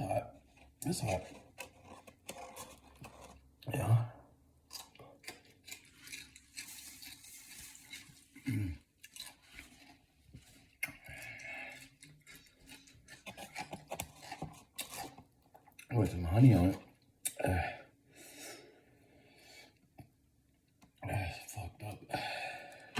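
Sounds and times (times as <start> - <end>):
food and packaging rustling: 0.3 - 3.6, 4.6 - 15.8.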